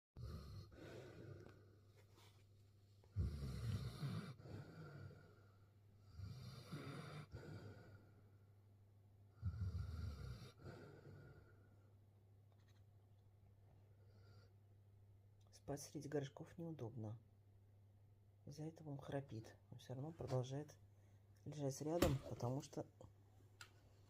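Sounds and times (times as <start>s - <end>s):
pet snoring: 0.2s - 1.8s, 3.1s - 8.2s, 9.3s - 11.7s
quiet breathing: 0.2s - 8.6s, 9.3s - 12.0s, 13.7s - 14.8s, 20.9s - 21.4s.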